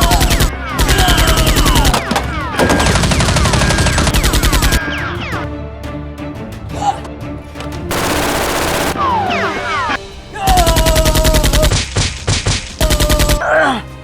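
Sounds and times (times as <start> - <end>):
background music: 0.0 - 14.0
rapid automatic gunfire: 1.6 - 4.8, 7.8 - 9.3.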